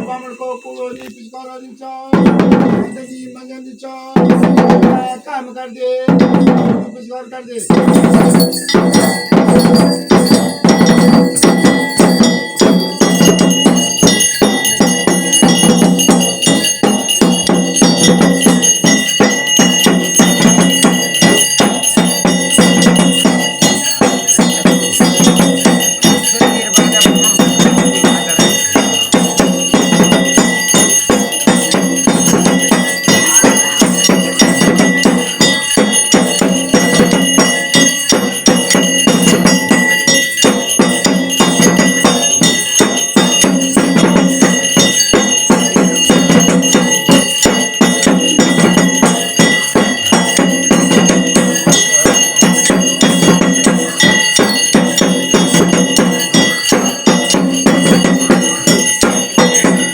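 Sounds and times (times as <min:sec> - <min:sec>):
bells ringing: 0:00.0 - 0:59.9
fast steady drumming: 0:02.0 - 0:03.3, 0:04.0 - 0:07.0, 0:07.6 - 0:59.9.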